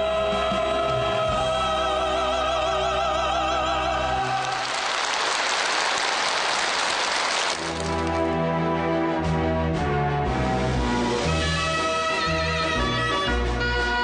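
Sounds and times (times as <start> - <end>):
music accompaniment: 0.0 - 14.0
audience applauding: 4.2 - 8.3.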